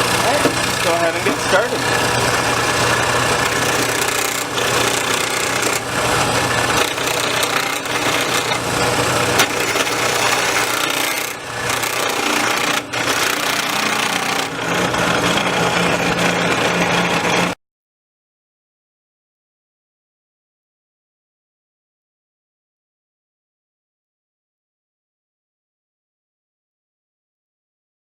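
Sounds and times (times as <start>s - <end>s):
lathe motor humming: 0.0s - 17.6s
turning tool cutting wood: 0.0s - 17.6s.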